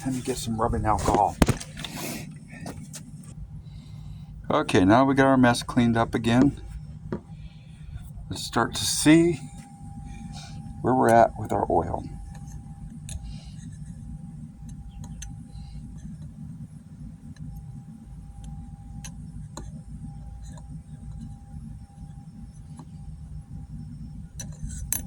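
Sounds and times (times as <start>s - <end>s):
faint steady tone: 0.0s - 25.0s
steady low hum: 0.0s - 25.0s.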